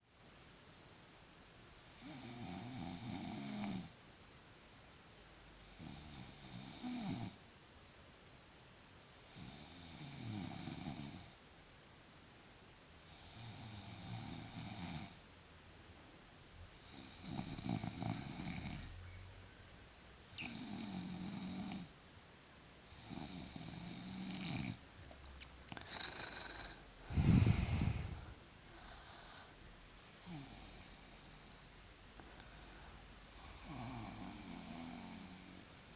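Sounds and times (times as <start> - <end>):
person snoring: 16.8 - 18.9, 25.7 - 29.5, 30.2 - 31.8, 33.4 - 35.9.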